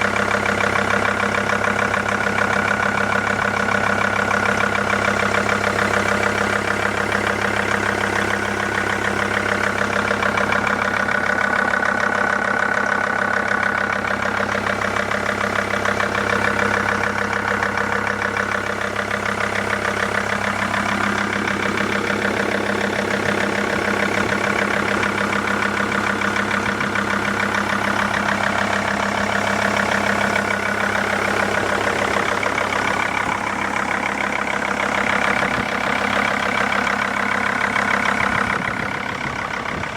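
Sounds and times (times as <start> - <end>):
car engine idling with knock: 0.0 - 39.9.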